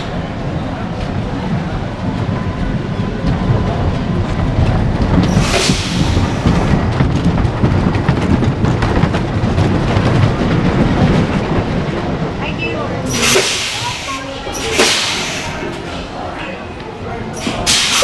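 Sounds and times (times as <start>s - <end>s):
ride train rumbling on rails: 0.0s - 18.0s
rush of hiss: 13.1s - 15.7s.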